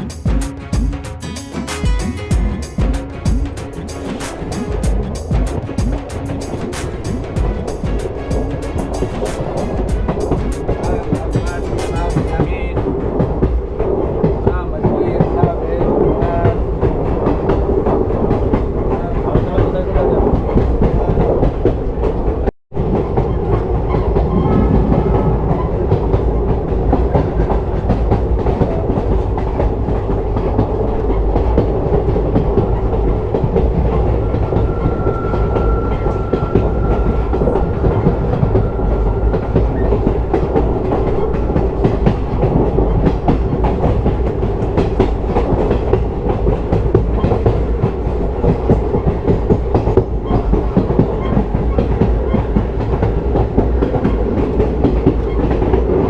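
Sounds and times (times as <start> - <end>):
train rumble: 0.0 - 56.0
wheels clacking over rail joints: 2.4 - 36.3, 38.5 - 56.0
faint high whine: 33.7 - 41.3.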